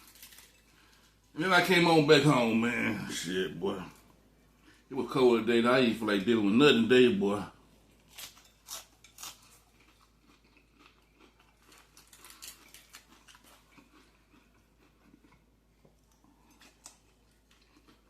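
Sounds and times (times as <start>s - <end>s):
person chewing crunchy food: 0.0s - 1.3s, 8.0s - 18.0s.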